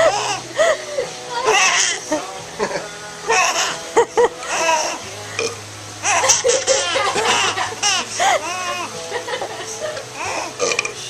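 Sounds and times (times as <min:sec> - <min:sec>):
baby laughing: 0:00.0 - 0:05.0, 0:06.0 - 0:10.6.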